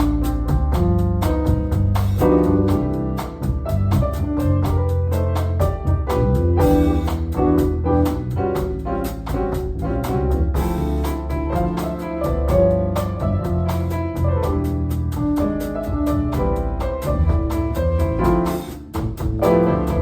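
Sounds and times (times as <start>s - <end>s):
drums keeping a beat: 0.0s - 20.0s
piano chords: 0.0s - 20.0s
walking bass: 0.0s - 20.0s.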